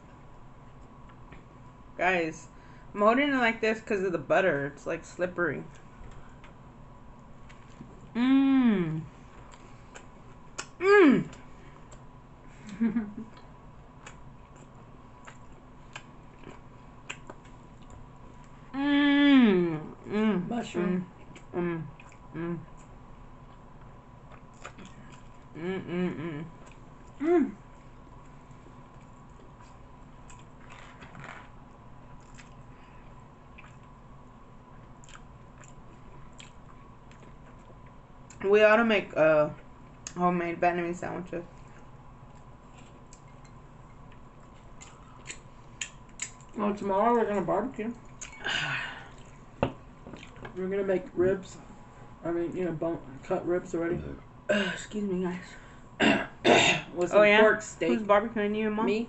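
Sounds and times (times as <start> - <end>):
faint steady hum: 0.0 - 59.0
chewing sandwich: 13.2 - 18.6, 21.1 - 25.5, 26.6 - 34.1, 34.7 - 38.4, 41.5 - 46.6.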